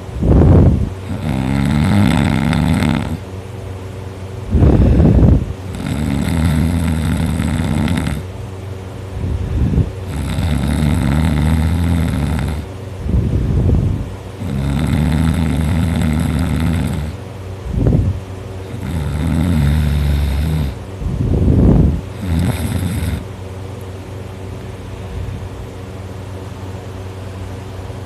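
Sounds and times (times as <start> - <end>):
person snoring loudly: 1.0 - 3.2, 4.5 - 8.3, 9.6 - 12.7, 14.4 - 17.2, 18.6 - 20.8, 22.1 - 23.3
noisy breaths: 4.4 - 8.3, 9.1 - 23.3.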